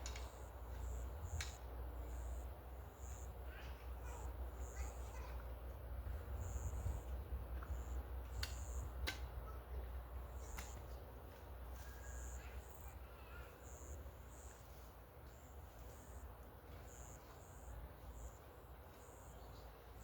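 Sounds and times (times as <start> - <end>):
sharp clicks: 1.3 - 1.6.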